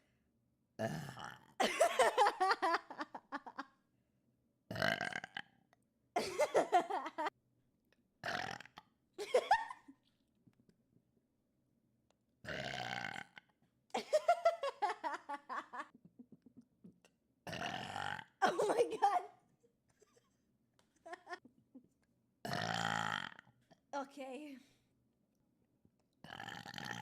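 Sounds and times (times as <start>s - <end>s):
person burping: 0.8s - 2.1s, 4.7s - 5.5s, 8.2s - 8.8s, 12.5s - 13.4s, 17.4s - 19.2s, 22.4s - 23.5s, 26.3s - 27.0s.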